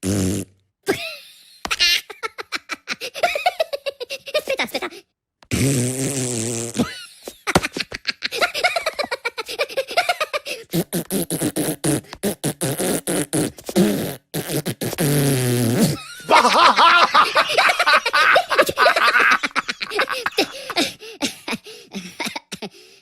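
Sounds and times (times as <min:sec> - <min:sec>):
cartoon fart sound effects: 0:00.0 - 0:00.6, 0:05.5 - 0:07.0, 0:10.6 - 0:16.1.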